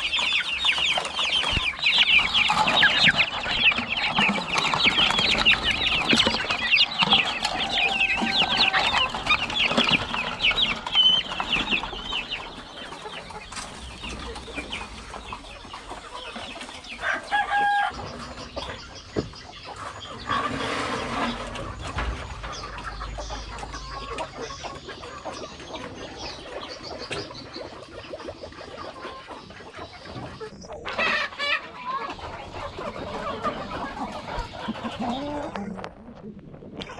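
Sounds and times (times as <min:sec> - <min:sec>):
chickens clucking and calling: 0:00.0 - 0:36.9
chicken long held call: 0:07.2 - 0:10.0.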